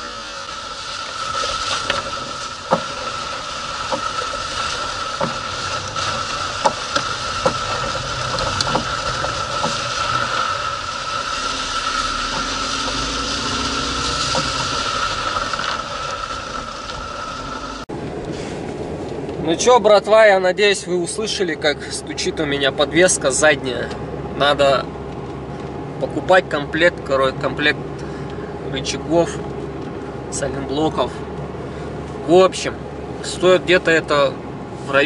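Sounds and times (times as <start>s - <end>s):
road and tyre noise: 0.0s - 35.0s
suspension knocking over bumps: 1.1s - 17.9s.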